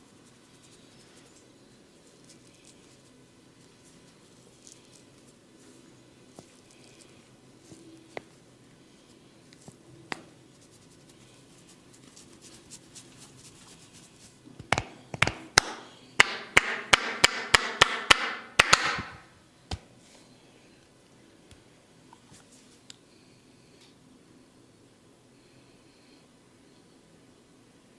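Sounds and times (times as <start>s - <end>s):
hands rubbing hiss: 9.0s - 14.4s.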